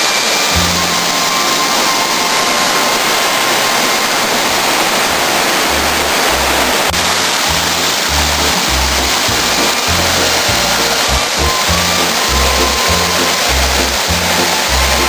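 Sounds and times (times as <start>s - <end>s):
waterfall roaring: 0.0s - 15.0s
background music with bass: 6.4s - 15.0s.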